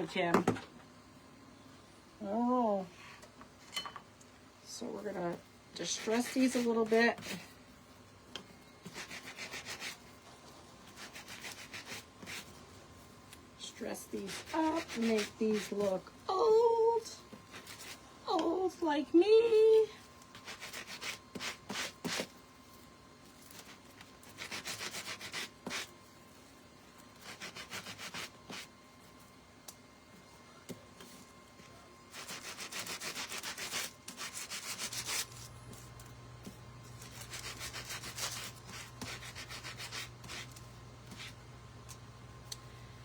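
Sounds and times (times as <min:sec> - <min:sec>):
hand sanding strokes: 0:05.9 - 0:07.5, 0:08.9 - 0:10.0, 0:10.9 - 0:12.5, 0:14.1 - 0:16.0, 0:20.4 - 0:22.3, 0:23.5 - 0:25.9, 0:27.2 - 0:28.7, 0:32.1 - 0:35.5, 0:37.0 - 0:41.4.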